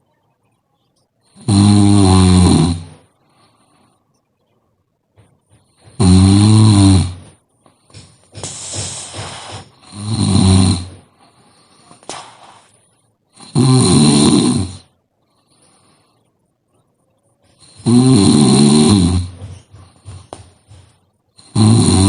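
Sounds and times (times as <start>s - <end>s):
person snoring loudly: 1.4s - 3.0s, 5.8s - 11.1s, 13.4s - 14.9s, 17.6s - 19.5s, 21.4s - 22.0s.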